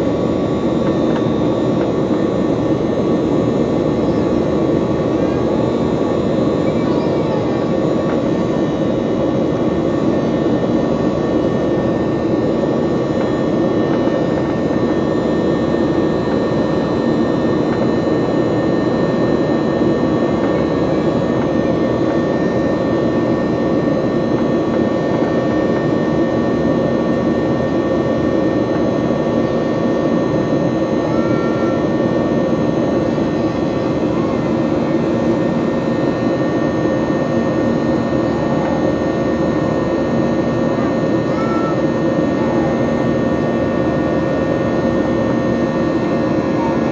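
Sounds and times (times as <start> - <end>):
jet engine cabin rush: 0.0 - 46.9
whining engine tones: 0.0 - 46.9.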